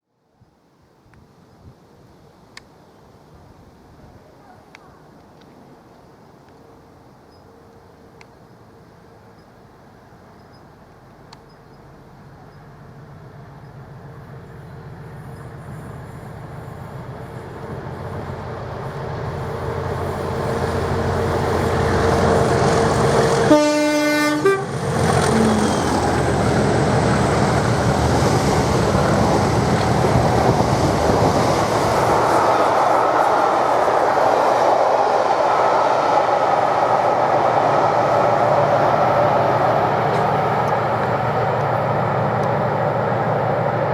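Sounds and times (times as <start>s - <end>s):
diesel locomotive engine rumble: 4.1s - 43.9s
train wheels on rails: 4.8s - 43.9s
train horn blast: 22.8s - 24.8s.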